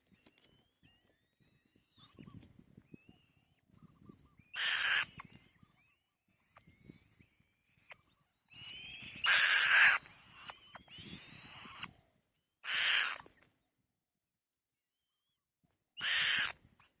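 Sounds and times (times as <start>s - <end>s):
nestling birds screeching: 4.6s - 5.4s, 8.6s - 11.9s, 12.7s - 13.3s, 16.0s - 16.6s
thin rising whistle: 9.9s - 11.9s.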